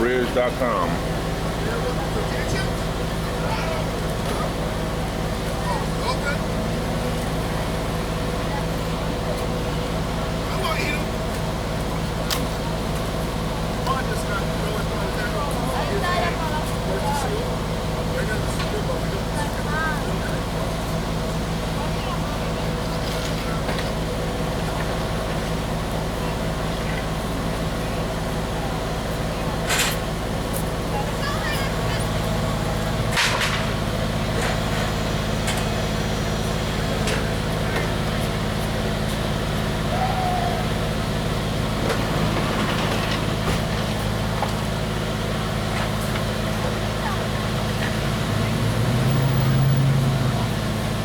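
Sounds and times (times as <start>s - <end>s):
idling engine hum: 0.0s - 51.0s.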